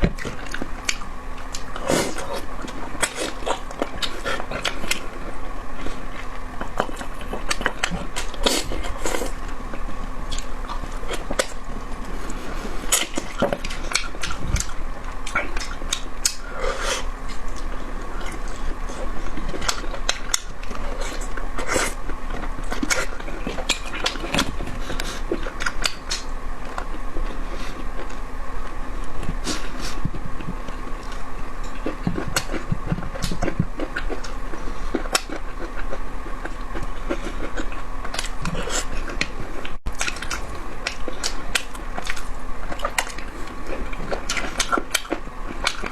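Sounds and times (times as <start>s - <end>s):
faint hum: 0.0s - 45.9s
person biting and chewing: 29.2s - 45.9s.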